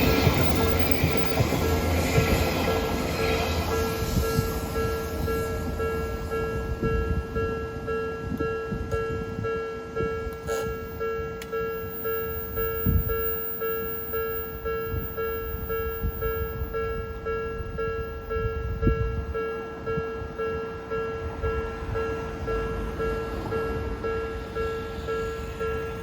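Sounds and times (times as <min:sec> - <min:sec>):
low rumble: 0:00.0 - 0:07.9
level crossing electronic bell: 0:03.7 - 0:26.0.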